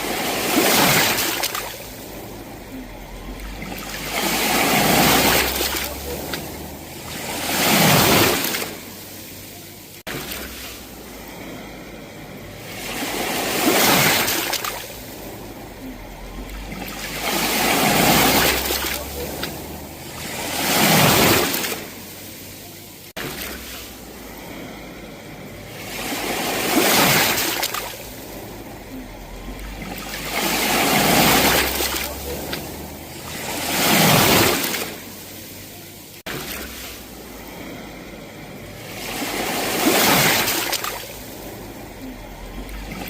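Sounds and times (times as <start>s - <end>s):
sea waves breaking on shore: 0.0s - 43.0s.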